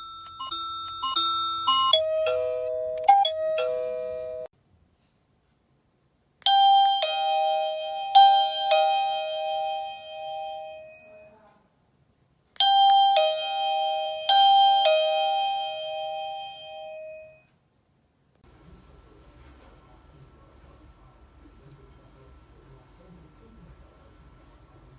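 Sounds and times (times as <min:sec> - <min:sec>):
doorbell ding-dong chime: 0:00.0 - 0:04.5, 0:06.5 - 0:11.5, 0:12.6 - 0:17.5.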